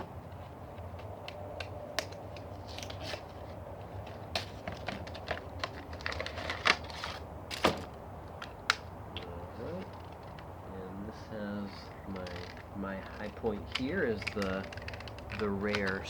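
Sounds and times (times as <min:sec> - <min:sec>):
plastic figures clicking: 0:12.1 - 0:16.0
plastic packaging crinkling: 0:12.1 - 0:16.0.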